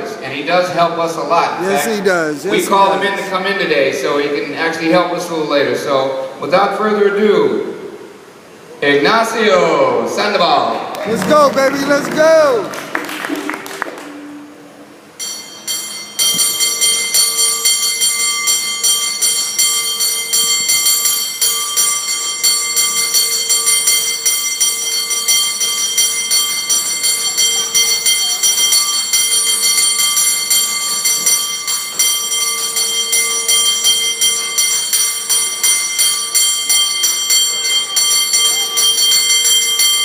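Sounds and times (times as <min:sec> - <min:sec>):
cable car bell ringing: 0:15.2 - 0:40.0.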